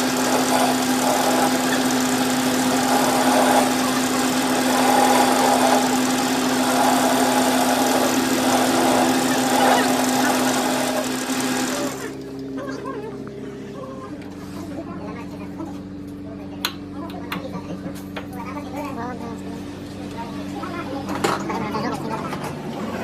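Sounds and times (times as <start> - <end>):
machine humming: 0.0 - 14.4.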